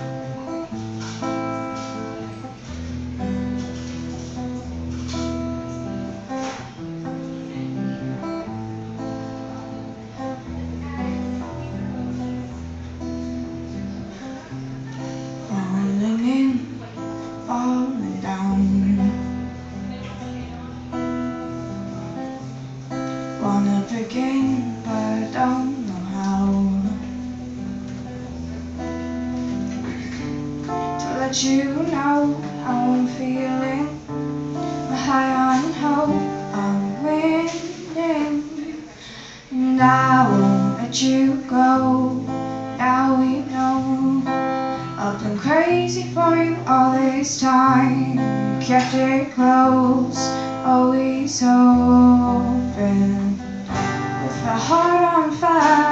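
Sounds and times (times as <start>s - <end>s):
acoustic guitar strummed and picked: 0.0s - 55.9s
woman singing: 14.1s - 20.4s, 23.2s - 27.4s, 30.6s - 55.9s.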